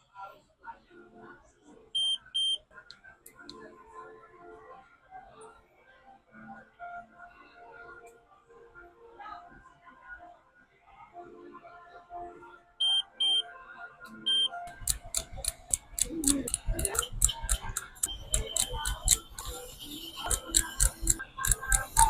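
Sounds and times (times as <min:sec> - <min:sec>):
high electronic beeps: 0:12.8 - 0:13.4, 0:18.0 - 0:22.0.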